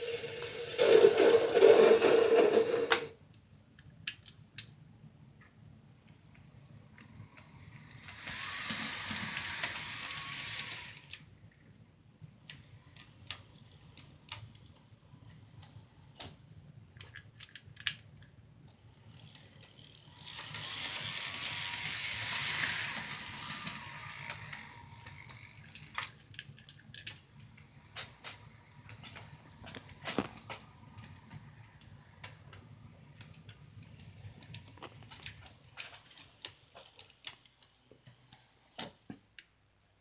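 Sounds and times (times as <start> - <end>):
model train clattering past: 0.0 - 3.2, 19.7 - 26.2
scattered clicks: 7.0 - 11.2, 19.1 - 39.5.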